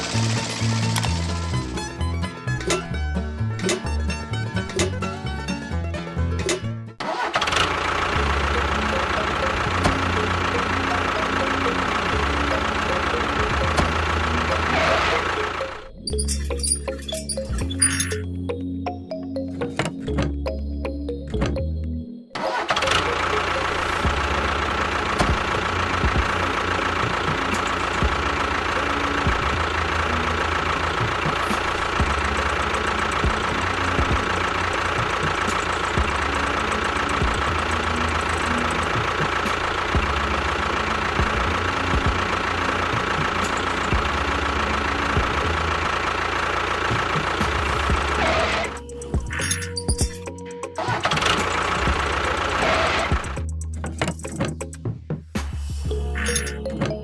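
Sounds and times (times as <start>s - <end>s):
small motor whining: 0.0s - 3.0s.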